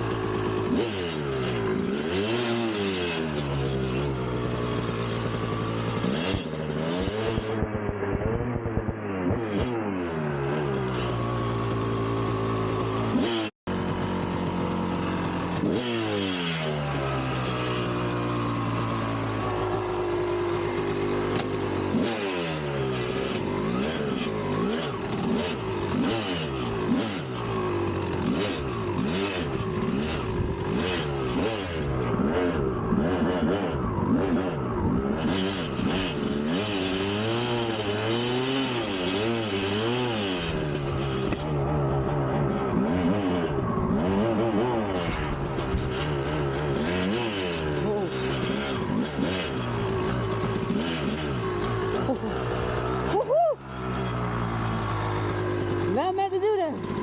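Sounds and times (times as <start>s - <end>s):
dirt bike engine revving: 0.0s - 57.0s.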